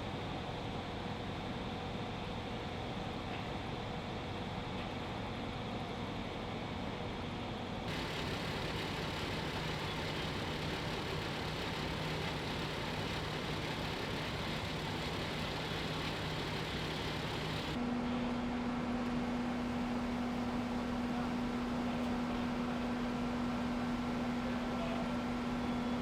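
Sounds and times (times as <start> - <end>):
engine idling: 7.9 - 17.8
hiss: 7.9 - 17.8.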